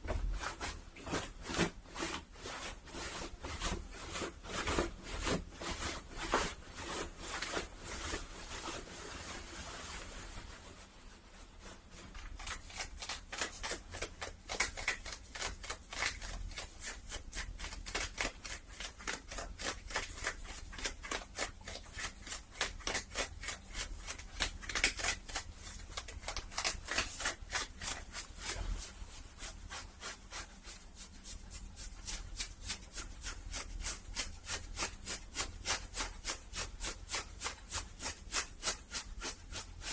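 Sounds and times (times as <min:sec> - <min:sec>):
cloth being rubbed: 0:00.0 - 0:39.9
cloth scratching strokes: 0:00.0 - 0:39.9.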